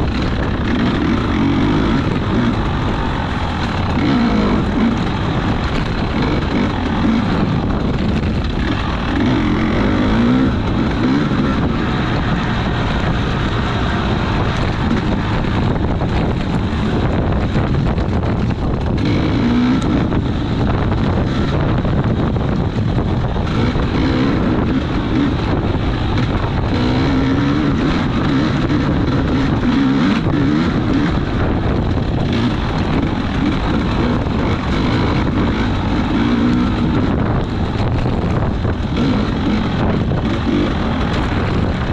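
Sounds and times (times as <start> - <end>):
small racing engine revving: 0.0 - 41.9
wind buffeting microphone: 0.0 - 41.9.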